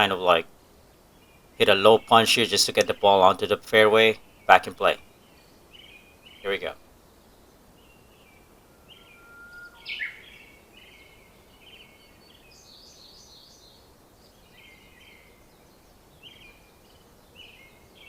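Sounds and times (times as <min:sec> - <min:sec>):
faint outdoor background noise: 0:00.0 - 0:18.0
songbirds singing: 0:00.0 - 0:18.0.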